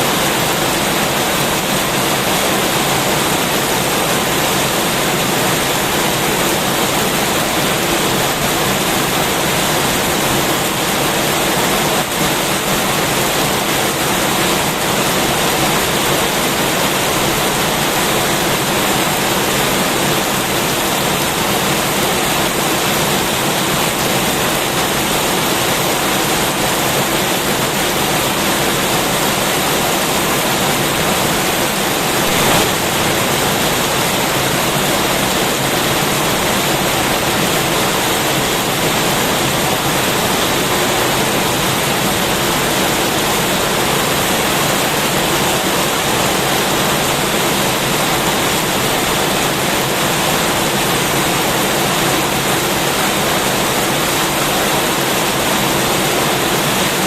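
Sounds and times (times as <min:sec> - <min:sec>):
heavy rain falling: 0:00.0 - 0:57.0.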